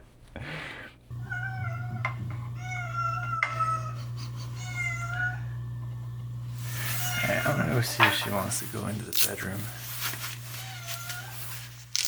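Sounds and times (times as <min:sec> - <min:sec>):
steady low hum: 0:01.0 - 0:10.0
cat meowing: 0:01.2 - 0:04.0, 0:04.6 - 0:05.6.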